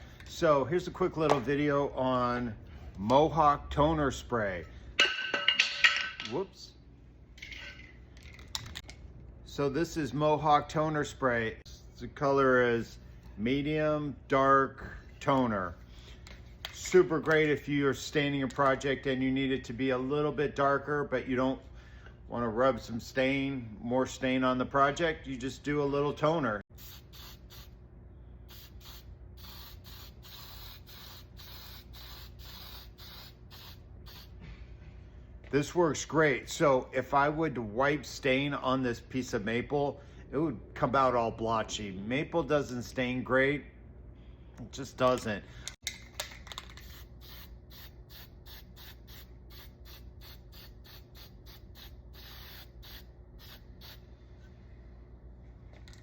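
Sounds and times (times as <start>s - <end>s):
aerosol spray can hissing in bursts: 26.8s - 27.8s, 28.5s - 34.4s, 46.8s - 54.0s.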